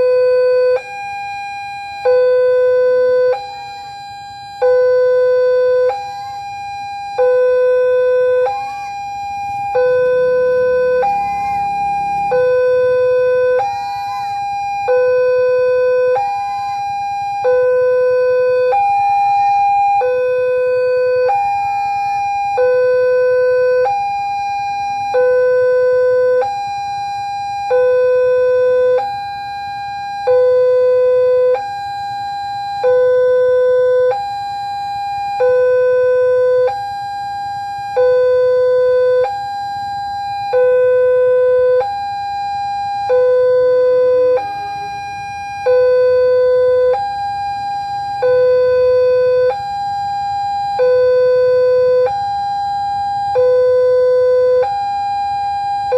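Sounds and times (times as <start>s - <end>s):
level crossing warning siren: 0.0s - 55.9s.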